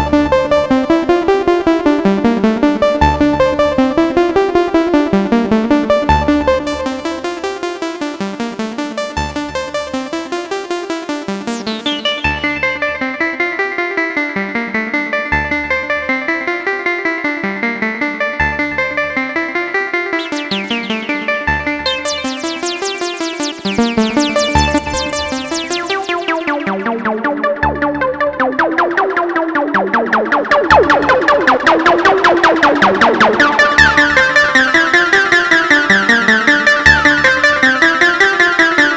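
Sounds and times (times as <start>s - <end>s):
synthesizer note sequence: 11.4s - 12.8s, 20.2s - 38.9s
bright falling synth sweep: 20.2s - 27.1s, 28.6s - 36.1s
deep synth bass note: 29.7s - 34.6s.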